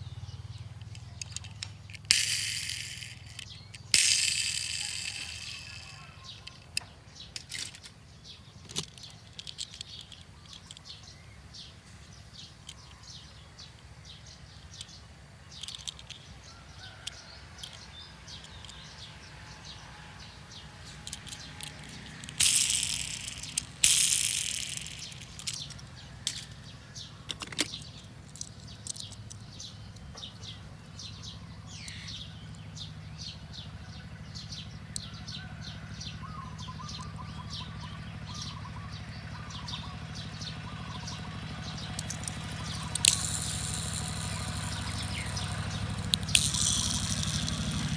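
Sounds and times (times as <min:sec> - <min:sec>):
low steady rumble: 0:00.0 - 0:06.7
birds chirping and calling: 0:00.4 - 0:19.8, 0:20.5 - 0:47.9.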